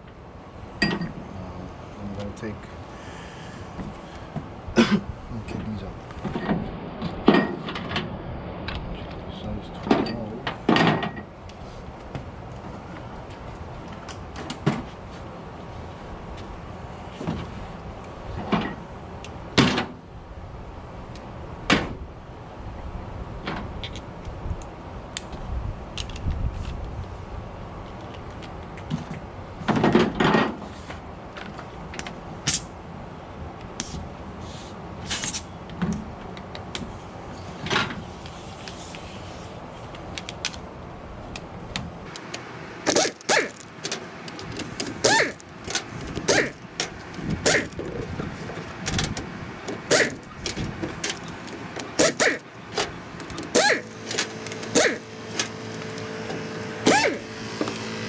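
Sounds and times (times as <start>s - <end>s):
metal tools clinking and knocking: 0.8s - 1.2s.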